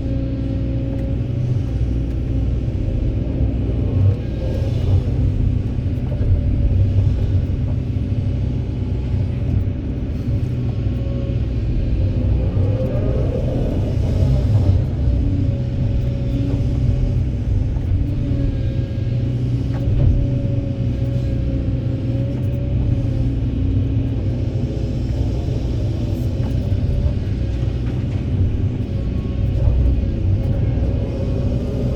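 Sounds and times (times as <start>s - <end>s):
engine whine: 0.0s - 31.9s
excavator diesel engine rumbling: 0.0s - 31.9s.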